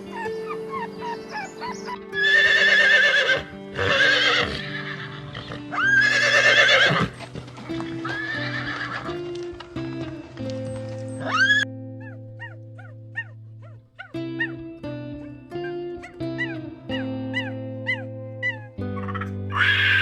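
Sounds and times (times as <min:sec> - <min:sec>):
background music: 0:00.0 - 0:20.0
horse whinnying: 0:00.1 - 0:09.3, 0:11.1 - 0:12.5, 0:17.9 - 0:20.0.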